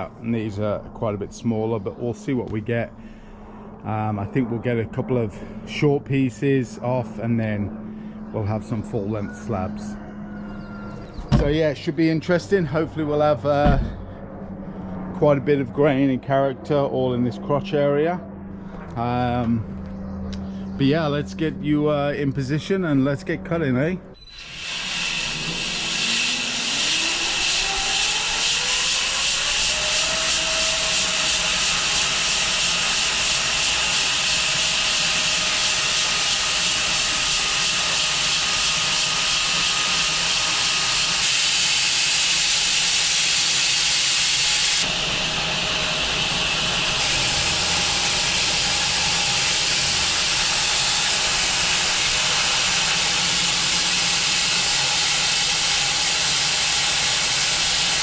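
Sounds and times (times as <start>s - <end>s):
bandsaw mill sawing log: 24.3s - 58.0s.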